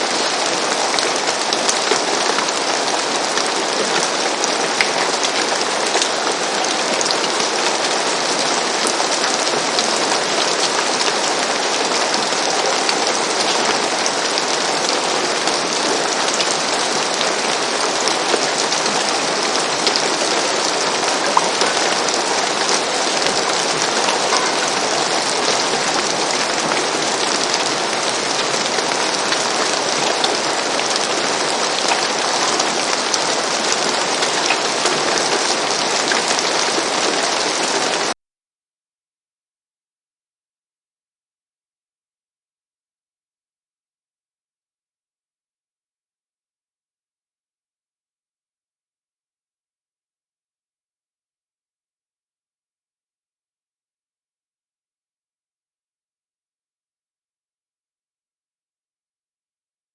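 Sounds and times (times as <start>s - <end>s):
rain falling on a roof: 0.0s - 38.2s.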